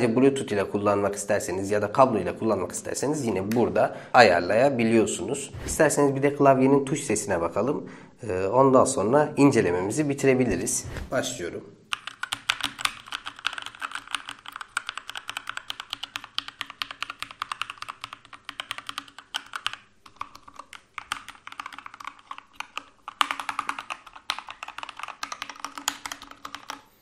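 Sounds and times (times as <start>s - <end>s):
mechanical keyboard typing: 11.9s - 26.9s.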